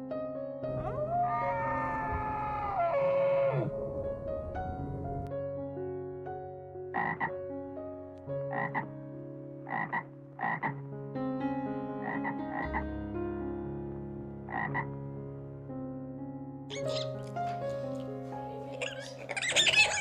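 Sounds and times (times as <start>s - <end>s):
soft background tune: 0.1s - 20.0s
frog croaking: 6.9s - 7.4s, 8.5s - 8.9s, 9.7s - 10.8s, 12.0s - 12.8s, 14.5s - 15.0s, 16.7s - 17.6s.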